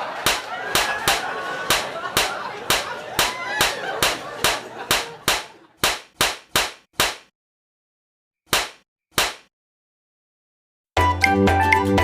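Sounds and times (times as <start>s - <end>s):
sharp slaps or knocks: 0.2s - 7.3s, 8.5s - 9.5s.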